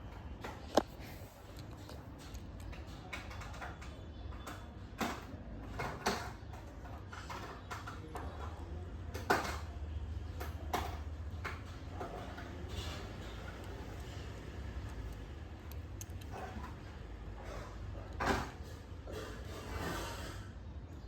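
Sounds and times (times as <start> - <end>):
toy vehicles clicking and knocking: 0.1 - 16.8.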